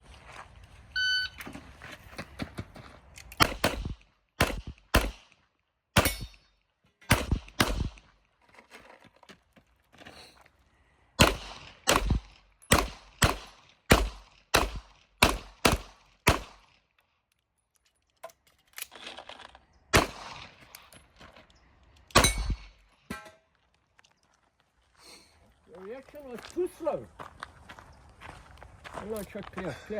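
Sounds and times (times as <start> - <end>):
shot timer beep: 1.0 - 1.4
pistol shots: 3.4 - 5.4, 6.0 - 6.4, 7.1 - 8.1, 11.2 - 16.7, 19.9 - 20.6.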